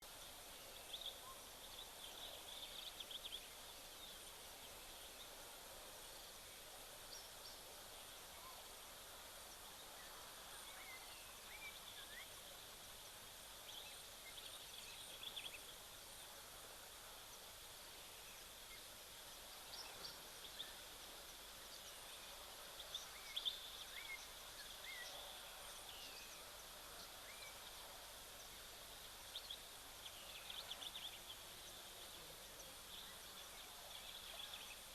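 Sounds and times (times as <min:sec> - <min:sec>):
steady hiss: 0:00.0 - 0:34.9
small birds chirping: 0:17.0 - 0:34.9.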